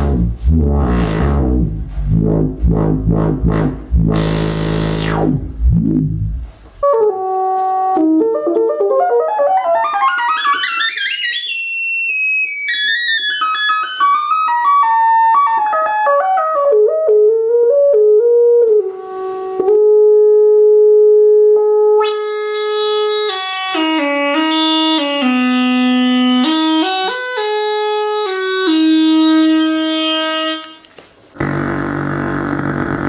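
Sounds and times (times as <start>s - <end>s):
fast synthesizer note run: 0.0s - 6.5s, 31.4s - 33.0s
buzzy synthesizer drone: 0.0s - 15.2s, 21.7s - 30.6s, 31.4s - 33.0s.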